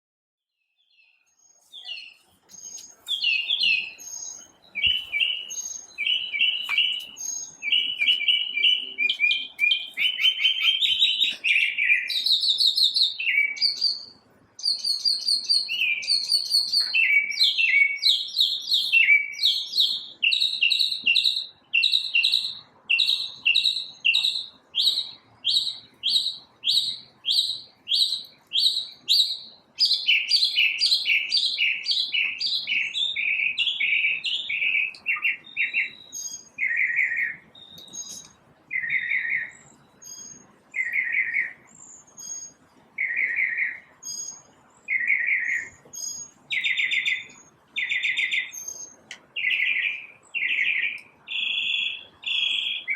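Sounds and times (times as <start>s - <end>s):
songbird chirping and trilling: 0.6s - 52.9s.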